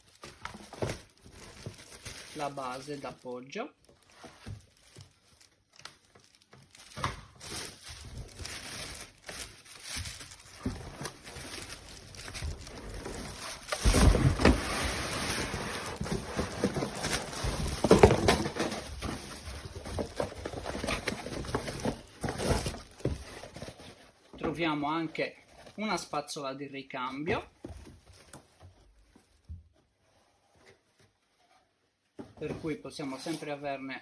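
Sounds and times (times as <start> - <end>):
packaging rustling and crinkling: 0.0 - 24.6.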